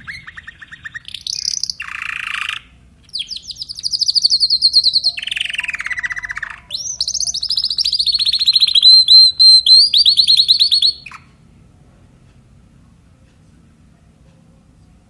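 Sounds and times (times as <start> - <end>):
canary singing trills: 0.0 - 11.4.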